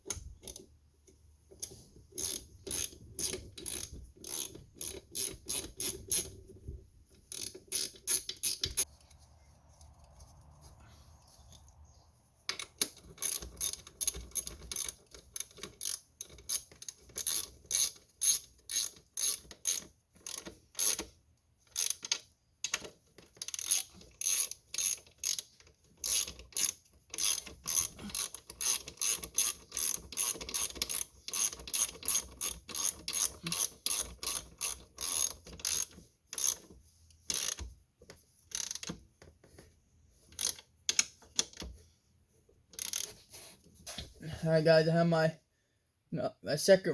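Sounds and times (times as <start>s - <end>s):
ratchet wrench clicking: 1.6s - 6.4s, 7.3s - 8.9s, 12.5s - 21.1s, 21.7s - 36.7s, 37.3s - 37.6s, 38.5s - 39.0s, 40.4s - 41.6s, 42.8s - 43.2s.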